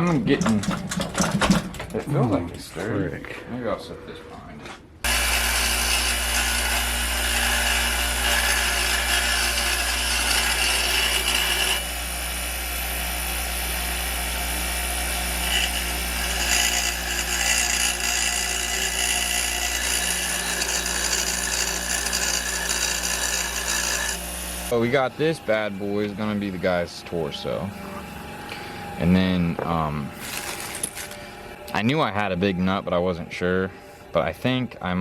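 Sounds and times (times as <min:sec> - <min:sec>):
angle grinder grinding metal: 0:05.0 - 0:31.6.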